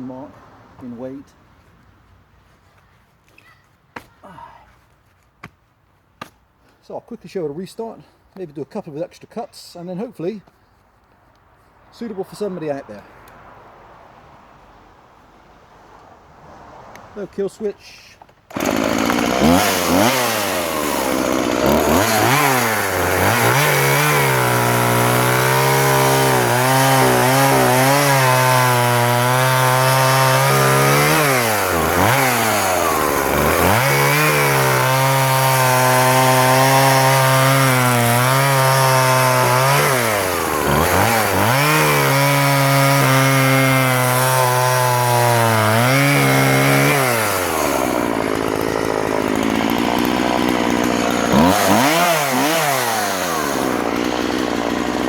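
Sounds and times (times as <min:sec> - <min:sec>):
chainsaw revving: 0:18.5 - 0:55.0.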